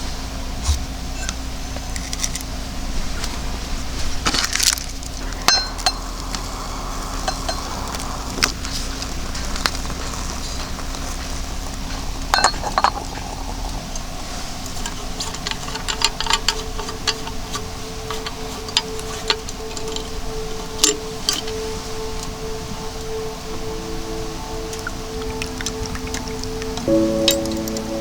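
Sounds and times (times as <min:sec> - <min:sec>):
low hum: 0:15.0 - 0:28.0.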